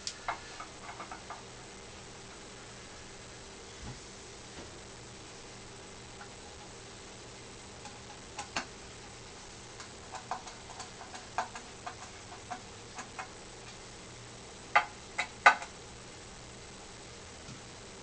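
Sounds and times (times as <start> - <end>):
parts clicking and tapping: 9.8 - 13.8.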